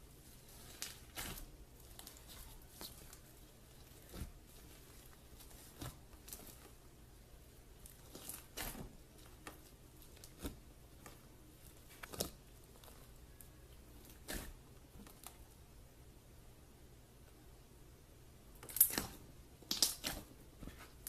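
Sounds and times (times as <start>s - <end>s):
slime popping and crackling: 0.5s - 6.7s, 7.8s - 11.1s, 18.6s - 20.3s.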